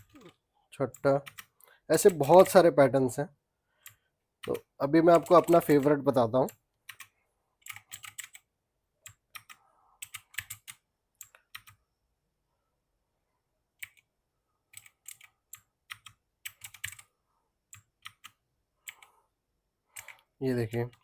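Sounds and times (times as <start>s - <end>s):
mechanical keyboard keys clicking: 6.9s - 8.4s, 14.7s - 17.0s.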